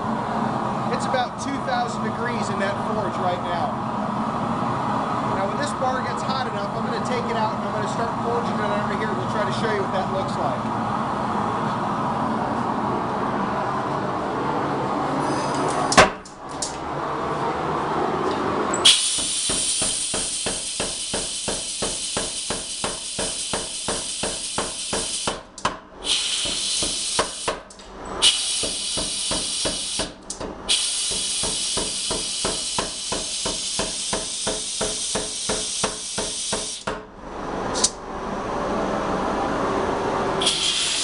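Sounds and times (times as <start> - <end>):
power hammer striking hot steel: 18.8 - 37.1
steady hiss: 30.7 - 36.9.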